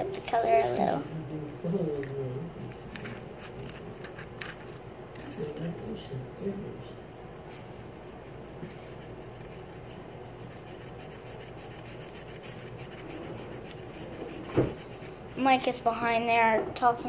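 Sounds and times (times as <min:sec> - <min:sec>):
marker scratching across surface: 0:07.8 - 0:15.1.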